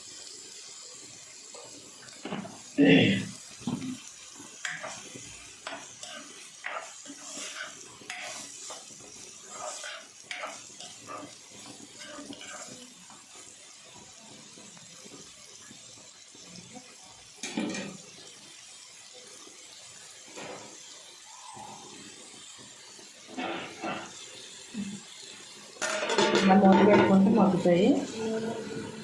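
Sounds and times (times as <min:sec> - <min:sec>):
onions sizzling in oil: 0:00.0 - 0:29.0
spoon stirring and clicking on pan: 0:04.6 - 0:08.9, 0:09.5 - 0:13.2.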